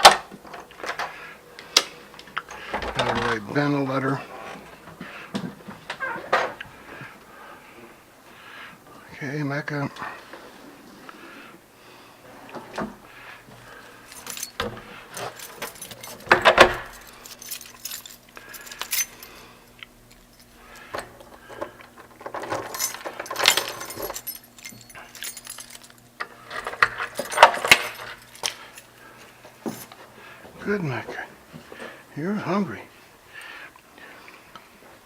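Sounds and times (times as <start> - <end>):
metallic clinking and jangling: 13.3 - 21.5, 22.1 - 30.0.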